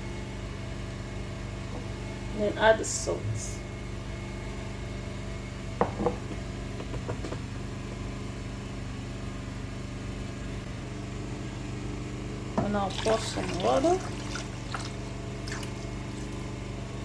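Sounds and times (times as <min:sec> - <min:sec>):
low mechanical hum: 0:00.0 - 0:17.0
light knocks: 0:05.8 - 0:07.4.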